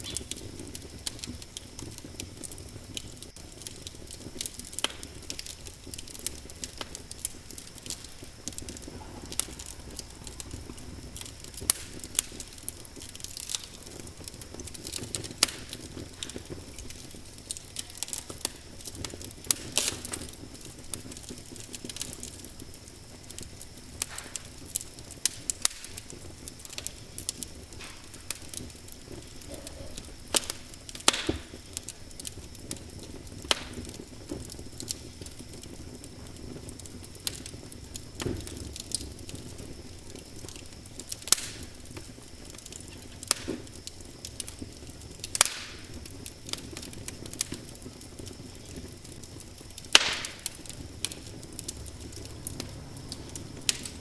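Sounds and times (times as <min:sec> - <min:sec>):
fire hissing: 0:00.0 - 0:54.0
wood fire crackling: 0:00.0 - 0:54.0
loud fire pop: 0:03.0 - 0:22.6, 0:23.9 - 0:36.2, 0:36.8 - 0:39.8, 0:40.4 - 0:42.1, 0:42.8 - 0:43.8, 0:45.2 - 0:46.7, 0:49.8 - 0:54.0.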